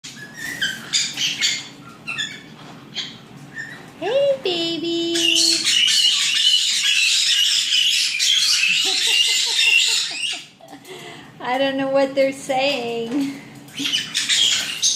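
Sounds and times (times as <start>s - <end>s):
parrots chattering shrilly: 0.1s - 3.9s, 5.1s - 10.6s, 13.7s - 14.9s.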